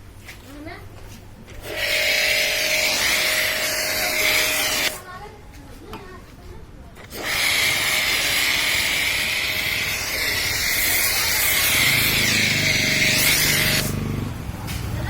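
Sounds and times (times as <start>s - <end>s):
pressure washer spraying water: 1.6s - 5.0s, 7.0s - 14.2s.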